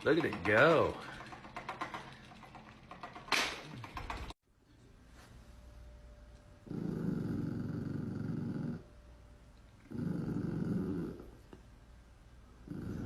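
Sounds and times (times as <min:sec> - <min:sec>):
pet snore-like breathing: 0:06.6 - 0:08.9, 0:09.9 - 0:11.5, 0:12.6 - 0:13.0.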